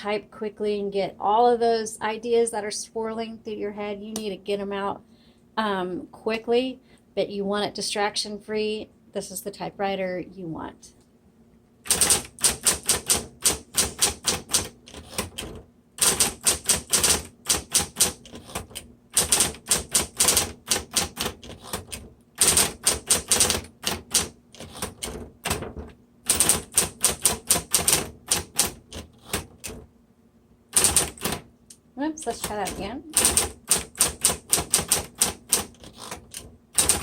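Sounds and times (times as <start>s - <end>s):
typewriter motor hum: 11.8s - 29.9s, 30.7s - 31.5s, 32.2s - 37.0s
typewriter key strikes: 11.9s - 29.8s, 30.8s - 31.4s, 32.4s - 37.0s.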